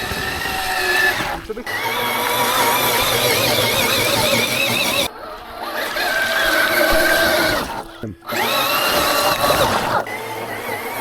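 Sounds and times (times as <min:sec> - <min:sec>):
toy car motor whining: 0:00.0 - 0:11.0.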